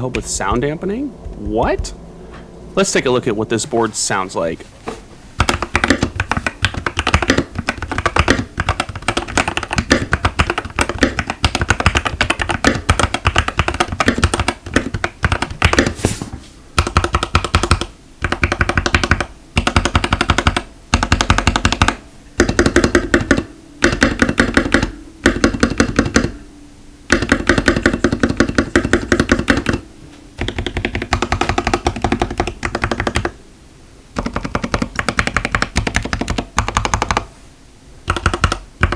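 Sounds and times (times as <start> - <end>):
typing on mechanical keyboard: 5.4 - 16.0, 16.8 - 26.3, 27.1 - 29.8, 30.4 - 33.4, 34.2 - 37.3, 38.1 - 38.9.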